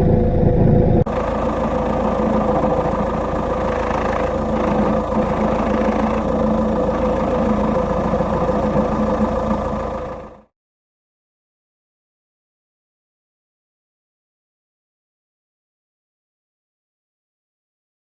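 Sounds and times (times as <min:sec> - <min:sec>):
diesel engine idling: 0:00.0 - 0:10.4.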